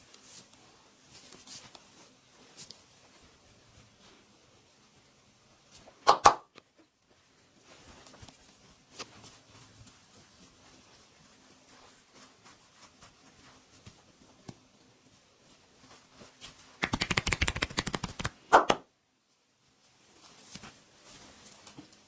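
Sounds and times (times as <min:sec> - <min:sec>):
hands slapping in massage: 0:06.0 - 0:06.5, 0:16.8 - 0:18.9.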